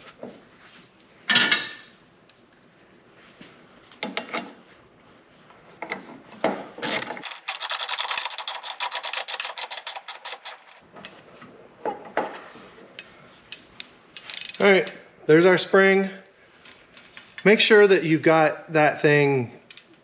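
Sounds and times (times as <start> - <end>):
belt sander grinding metal: 7.2 - 10.8
metal tools clinking: 7.2 - 10.8.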